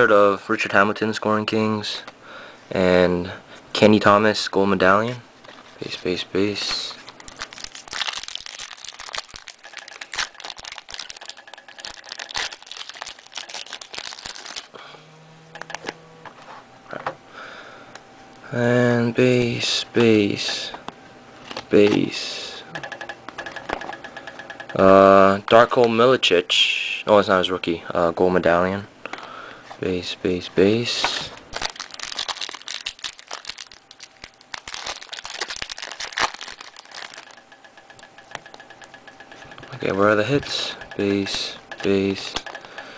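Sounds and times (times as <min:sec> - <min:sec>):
card pack wrapper crinkling: 0:05.4 - 0:14.8, 0:30.9 - 0:37.4
cards being handled: 0:05.4 - 0:14.8, 0:20.0 - 0:22.3, 0:30.9 - 0:37.4, 0:38.0 - 0:42.9.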